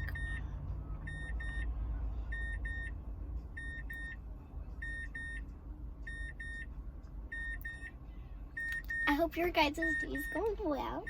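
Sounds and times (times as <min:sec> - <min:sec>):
car warning chime beeping: 0:00.0 - 0:01.7, 0:02.3 - 0:03.0, 0:03.6 - 0:04.2, 0:04.8 - 0:05.5, 0:06.1 - 0:08.0, 0:08.6 - 0:11.0.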